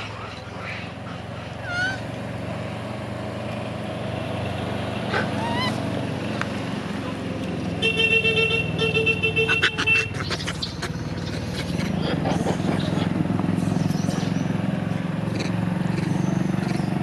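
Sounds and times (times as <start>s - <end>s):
vehicle engine humming: 0.0s - 17.0s
car horn short beeps: 7.8s - 9.7s.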